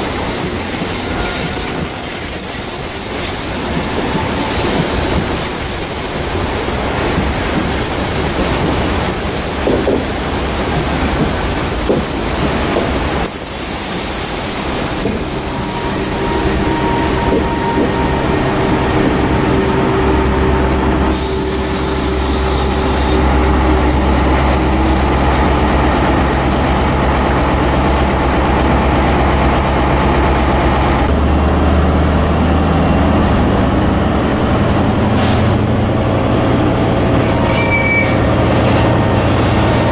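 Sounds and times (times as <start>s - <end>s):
train wheels rumbling on rails: 0.0s - 39.9s
diesel engine drone: 23.2s - 37.0s.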